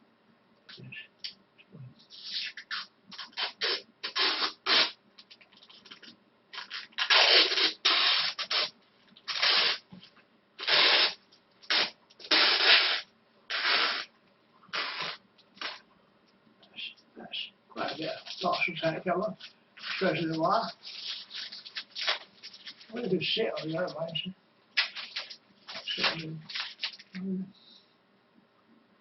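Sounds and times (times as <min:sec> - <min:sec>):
parcel tape ripping: 0:02.1 - 0:09.9, 0:10.6 - 0:14.1, 0:14.7 - 0:15.8, 0:19.8 - 0:23.9, 0:24.8 - 0:27.2.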